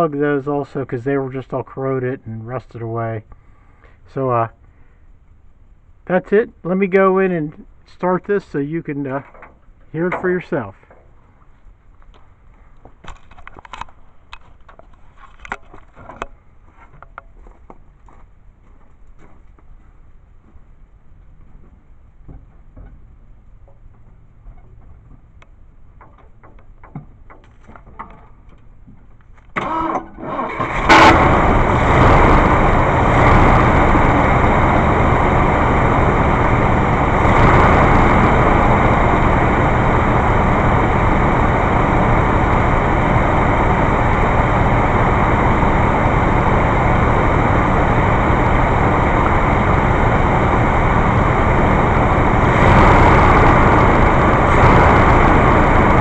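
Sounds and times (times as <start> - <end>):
engine running: 20.3 - 56.0.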